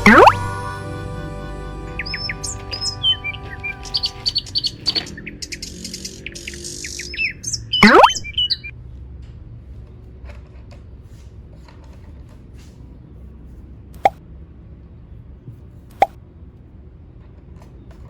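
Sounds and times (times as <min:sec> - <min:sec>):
music track: 0:00.0 - 0:04.9
birds chirping: 0:00.0 - 0:08.7.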